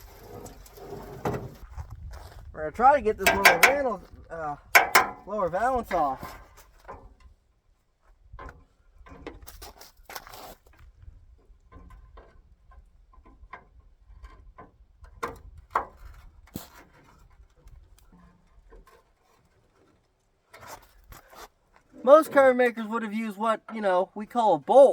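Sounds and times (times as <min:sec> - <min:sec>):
hand tools clicking on metal: 0:03.2 - 0:04.0, 0:04.7 - 0:05.3.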